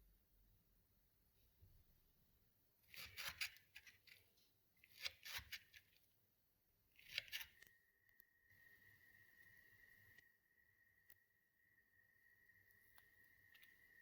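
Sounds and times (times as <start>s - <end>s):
crisp snipping and crackling: 7.0s - 7.8s.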